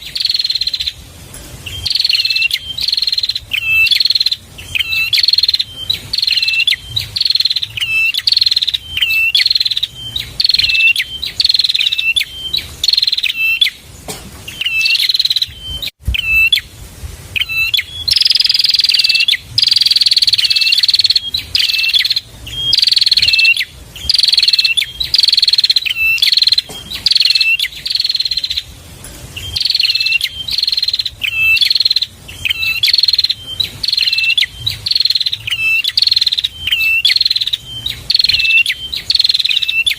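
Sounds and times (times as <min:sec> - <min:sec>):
bird singing buzzy phrases: 0:00.0 - 0:39.9.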